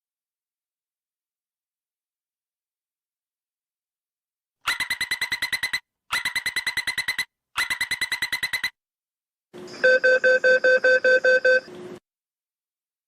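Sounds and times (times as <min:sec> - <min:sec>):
rapid door warning beeps: 0:04.7 - 0:08.7, 0:09.8 - 0:11.7.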